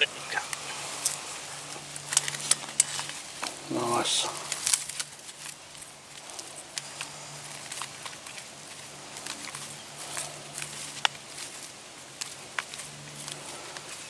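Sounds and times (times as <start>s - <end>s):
wire and hand tools clicking: 0.0s - 3.6s.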